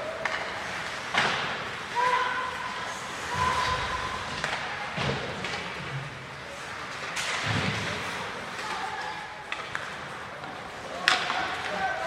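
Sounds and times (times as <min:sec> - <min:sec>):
arena background noise: 0:00.0 - 0:12.0.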